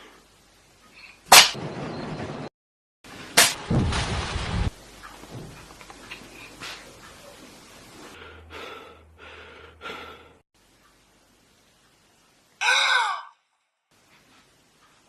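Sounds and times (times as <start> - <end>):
sudden loud cry: 12.6 - 13.4.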